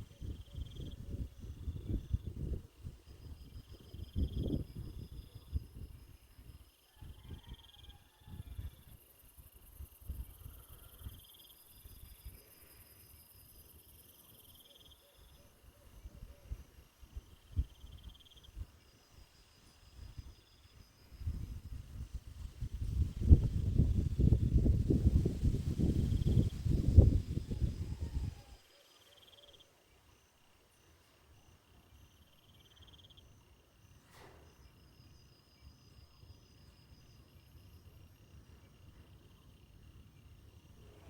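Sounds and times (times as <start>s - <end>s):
insects trilling: 0.0s - 41.0s.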